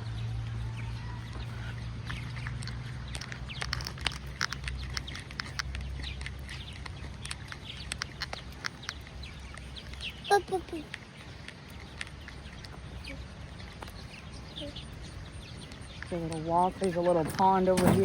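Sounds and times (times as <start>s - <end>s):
birds chirping: 0.0s - 18.0s
footsteps on a path: 4.2s - 17.1s.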